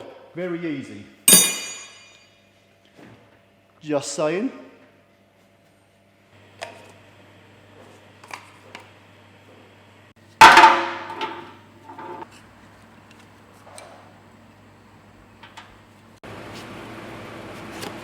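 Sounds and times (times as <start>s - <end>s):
loud metallic clang: 1.3s - 2.4s.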